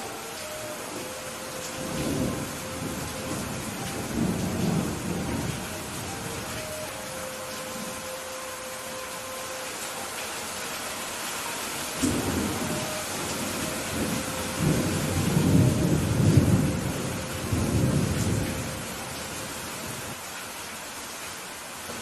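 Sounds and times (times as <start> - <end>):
steady rain hiss: 0.0 - 22.0
thunder rumble: 0.9 - 7.1, 12.0 - 19.2.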